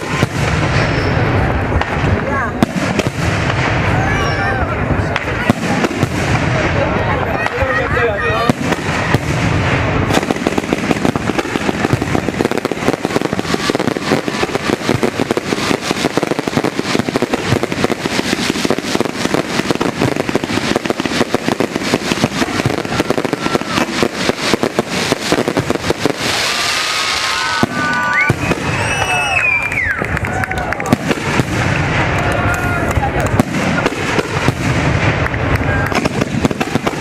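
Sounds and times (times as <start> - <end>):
firework hiss: 0.0 - 30.0
fireworks crackling and popping: 0.0 - 37.0.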